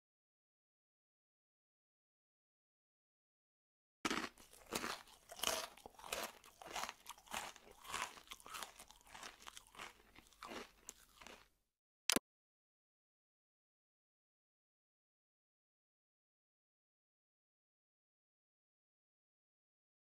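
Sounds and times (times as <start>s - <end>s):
crunching and chewing: 4.1s - 11.6s.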